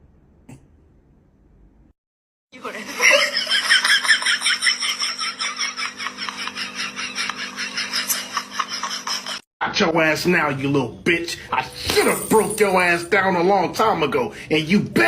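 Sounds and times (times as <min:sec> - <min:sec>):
rapid rhythmic laughter: 0:02.8 - 0:09.4.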